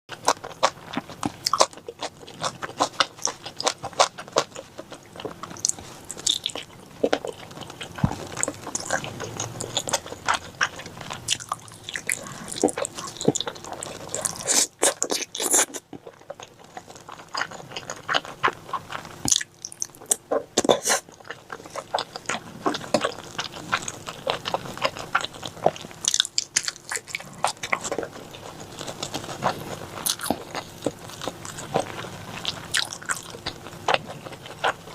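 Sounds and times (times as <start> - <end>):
person chewing crunchy food: 0.1 - 34.9.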